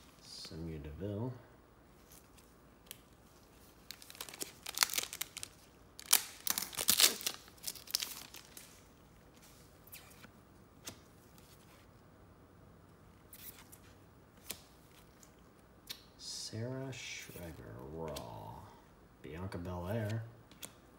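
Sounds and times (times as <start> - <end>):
wrapper ripping and crinkling: 2.0 - 8.9.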